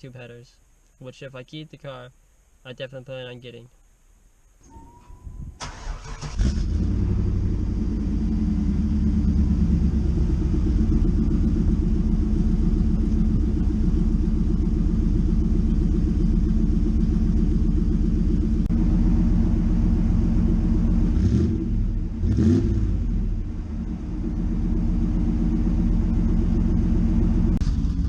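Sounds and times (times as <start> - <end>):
car engine starting: 4.7 - 28.0
car engine idling: 5.6 - 28.0.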